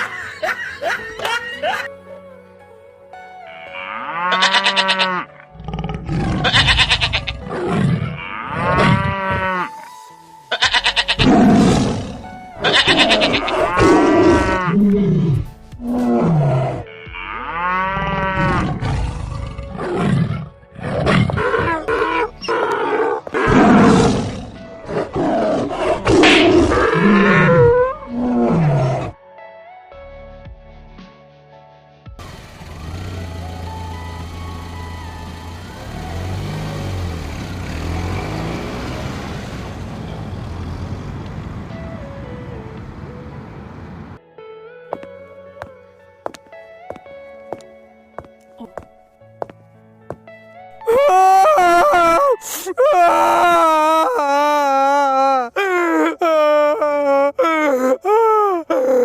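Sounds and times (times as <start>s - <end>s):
music: 0.0s - 37.1s, 41.4s - 56.2s
animal roars and growls: 4.1s - 9.7s, 11.2s - 29.2s.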